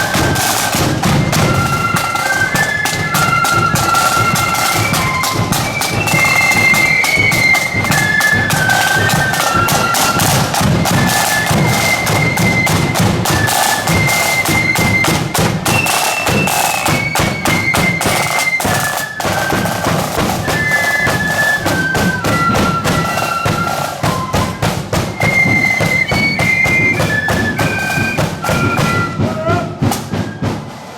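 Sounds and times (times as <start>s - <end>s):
flutes playing a tune: 0.0s - 30.9s
snare and bass drums: 0.0s - 30.9s.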